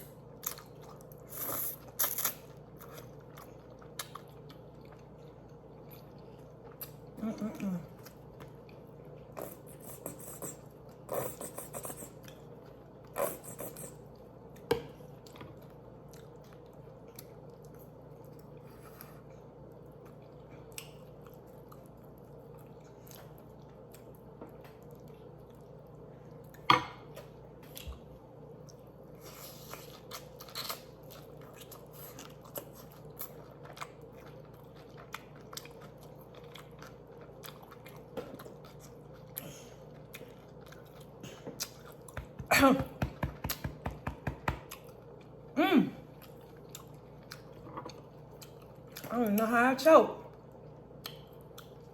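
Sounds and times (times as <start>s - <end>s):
person chewing: 0.0s - 42.5s, 44.5s - 49.1s, 50.3s - 51.9s.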